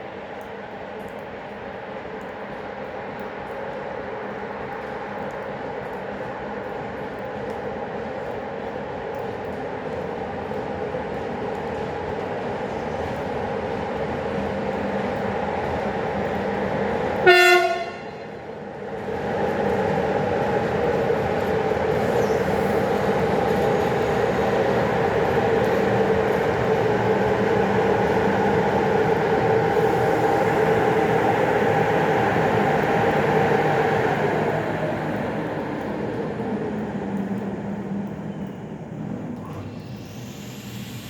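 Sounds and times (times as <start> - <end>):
electric locomotive humming: 1.8 - 41.0
locomotive horn blast: 17.2 - 18.4.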